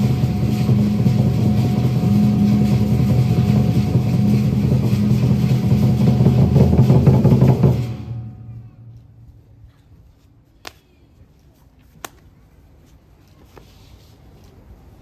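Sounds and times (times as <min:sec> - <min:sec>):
drum-led percussion music: 0:00.0 - 0:08.4.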